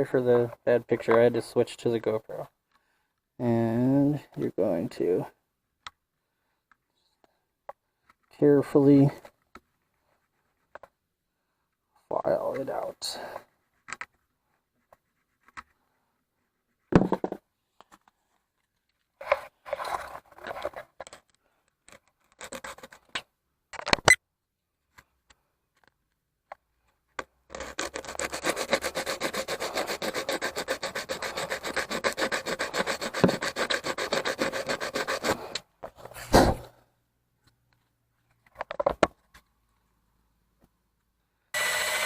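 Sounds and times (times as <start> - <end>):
file rasping on metal: 27.5 - 35.6.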